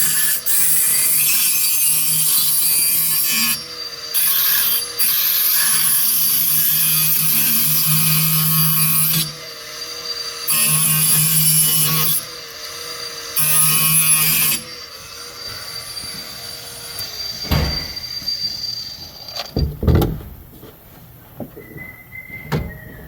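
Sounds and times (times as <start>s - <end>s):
grinder grinding metal: 0.0s - 19.8s
grinder motor whirring: 0.0s - 19.8s
sharp knocks: 17.4s - 18.0s, 19.6s - 20.5s.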